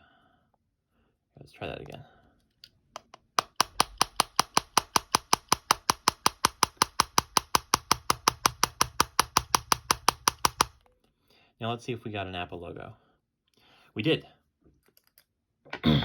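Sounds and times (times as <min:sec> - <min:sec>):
hard object tapping on phone: 0:03.0 - 0:10.8.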